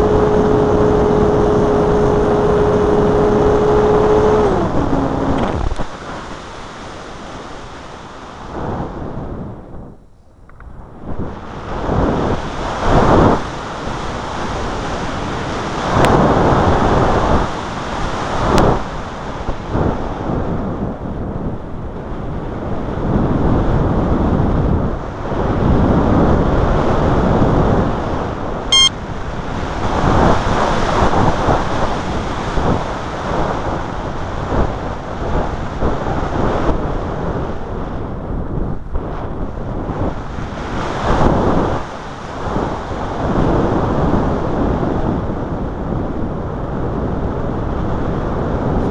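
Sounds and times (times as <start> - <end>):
wind buffeting microphone: 0.0 - 48.9
short click: 28.7 - 28.9.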